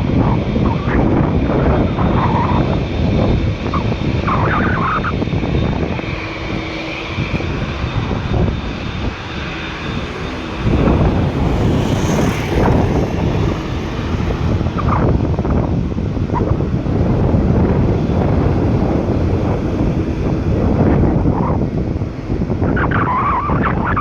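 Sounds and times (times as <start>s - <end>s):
jet engines roaring: 0.0s - 24.0s.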